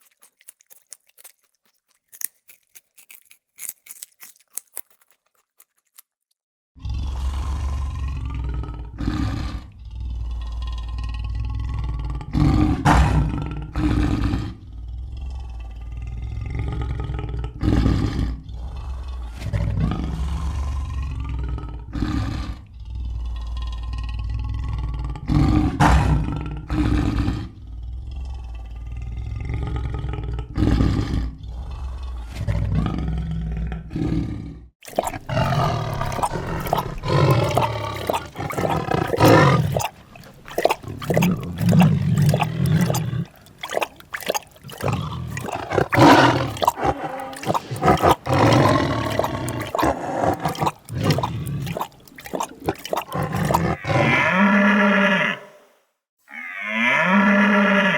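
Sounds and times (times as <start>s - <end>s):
large animal roaring: 6.8s - 43.8s, 44.5s - 55.5s
high-pitched animal call: 35.2s - 55.6s, 56.3s - 57.9s.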